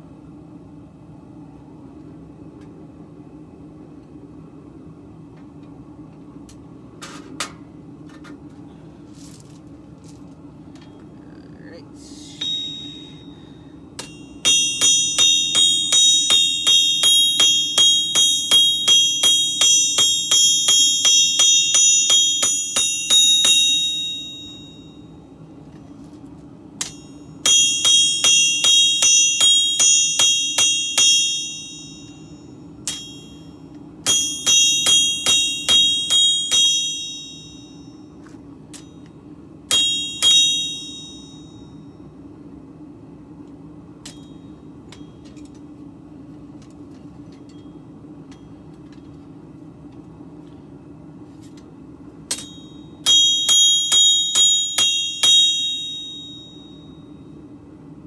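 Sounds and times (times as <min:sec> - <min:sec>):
low hum: 0:10.5 - 0:45.6
hammer striking steel on anvil: 0:12.2 - 0:25.1, 0:26.8 - 0:39.1, 0:39.7 - 0:41.9, 0:44.0 - 0:45.4, 0:52.3 - 0:57.2.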